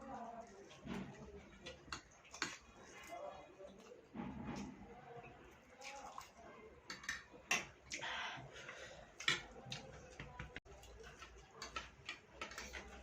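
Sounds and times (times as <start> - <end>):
utensils clicking and tapping: 6.9 - 7.8, 8.7 - 13.0.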